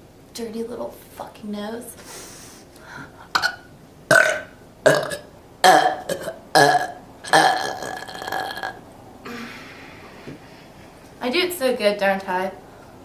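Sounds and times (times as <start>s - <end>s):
woman burping: 3.2s - 9.6s.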